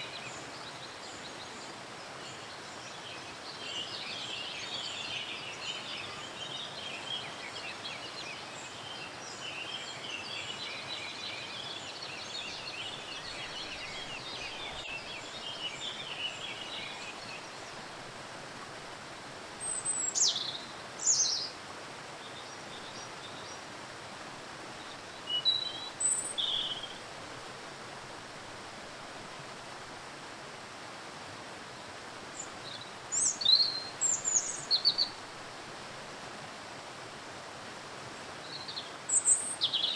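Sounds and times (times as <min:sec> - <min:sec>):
songbirds twittering: 0:00.0 - 0:17.8, 0:24.9 - 0:27.0.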